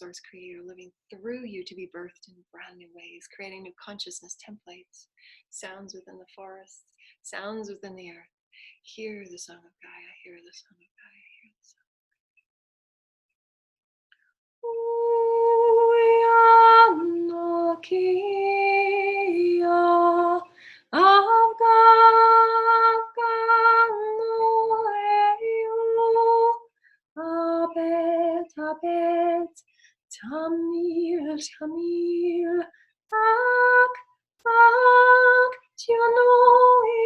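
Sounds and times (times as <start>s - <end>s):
woman singing unaccompanied: 14.6s - 26.6s, 27.2s - 37.0s.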